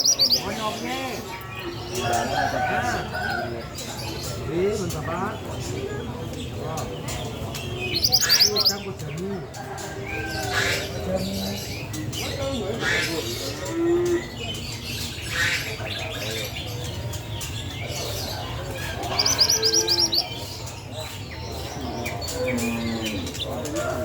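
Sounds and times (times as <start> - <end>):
bird chirps: 0.0 - 0.6, 7.1 - 9.0, 14.5 - 23.6
songbird trilling: 0.0 - 0.6, 7.7 - 9.0, 17.2 - 23.6.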